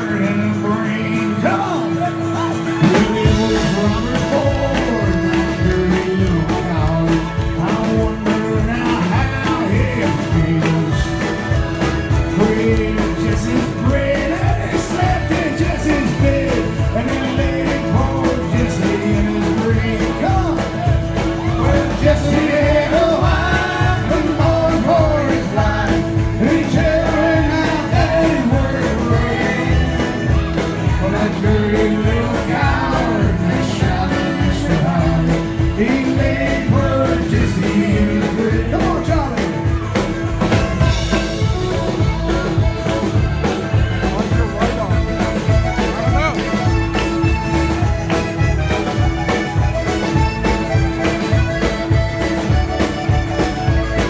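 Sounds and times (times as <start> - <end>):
lead vocal singing: 0.0 - 39.8
folk band playing country song: 0.0 - 54.0.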